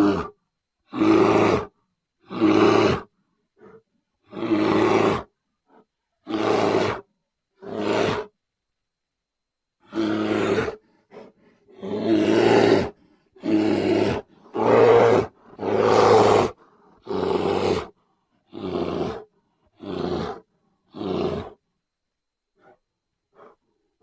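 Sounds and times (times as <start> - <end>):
bear roaring: 0.0 - 5.3, 6.2 - 8.3, 9.8 - 21.6.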